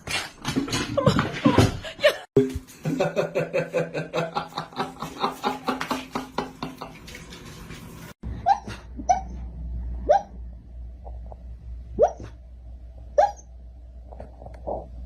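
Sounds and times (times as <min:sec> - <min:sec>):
dog hiccuping: 0:13.2 - 0:13.5.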